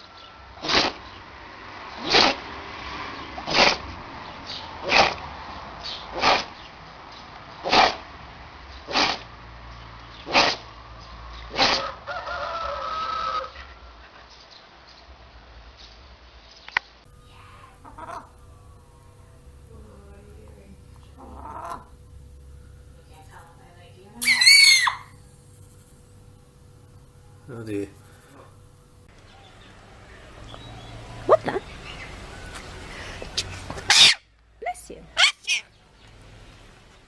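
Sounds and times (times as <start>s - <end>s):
pet sneezing: 0.6s - 1.0s, 2.0s - 2.5s, 3.5s - 3.8s, 4.8s - 5.2s, 6.2s - 6.5s, 7.6s - 8.0s, 8.9s - 9.3s, 10.3s - 10.6s, 11.5s - 11.8s
brief pitched call: 24.1s - 33.2s, 33.8s - 34.3s.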